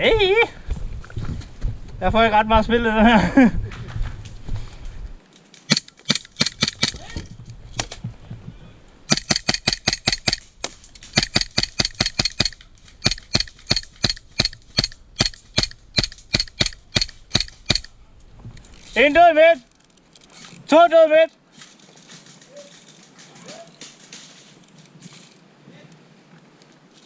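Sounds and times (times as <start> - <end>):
airsoft gun shots: 5.7 - 7.1, 9.1 - 17.9.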